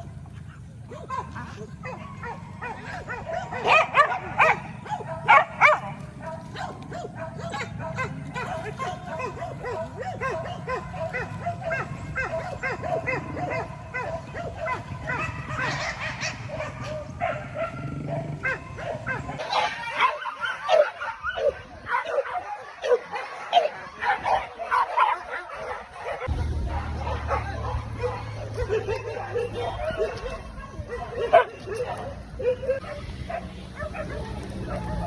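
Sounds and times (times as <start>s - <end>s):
dogs barking and yelping: 0.0s - 35.0s.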